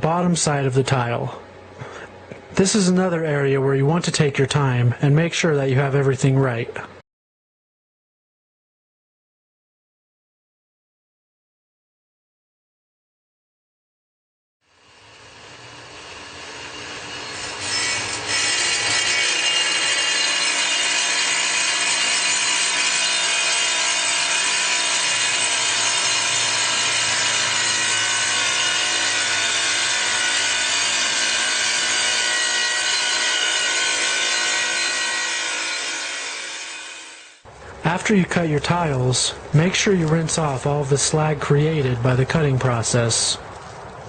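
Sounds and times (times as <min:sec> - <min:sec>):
power saw cutting stone tile: 0:14.7 - 0:37.5.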